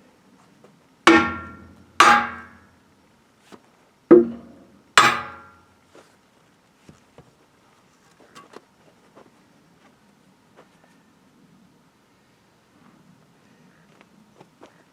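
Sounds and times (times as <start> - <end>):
hammer ringing on steel rim: 1.1 - 2.7, 4.1 - 5.6.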